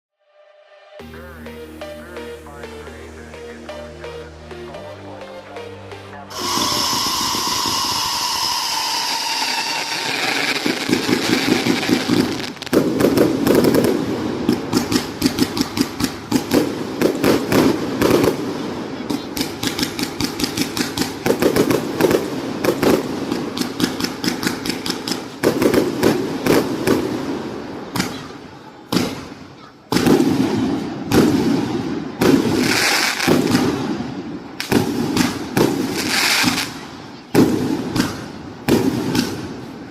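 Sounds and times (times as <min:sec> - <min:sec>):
falling whistling tone: 0:06.3 - 0:10.3
firework cake firing volleys: 0:06.4 - 0:39.9.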